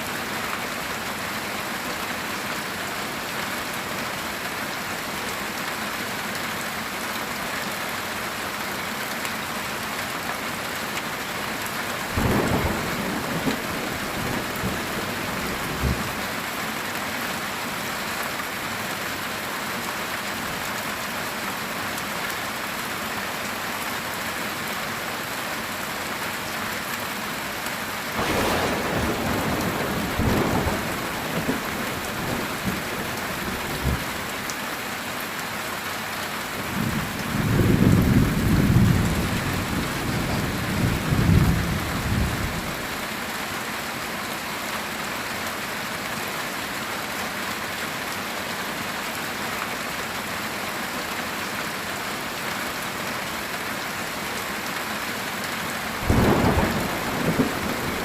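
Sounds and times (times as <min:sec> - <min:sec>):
heavy rain on a tin roof: 0:00.0 - 0:58.0
thunder crack and rumble: 0:12.2 - 0:16.2, 0:56.0 - 0:58.0.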